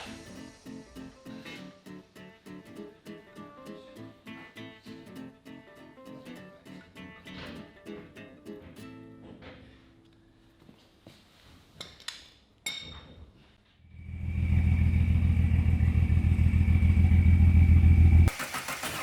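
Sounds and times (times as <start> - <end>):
engine cranking on starter motor: 17.0 - 19.0.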